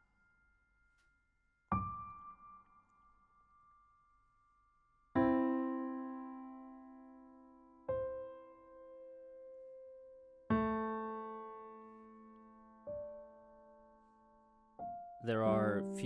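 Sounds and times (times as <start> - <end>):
slow piano chords: 1.7 - 4.0, 5.1 - 16.0.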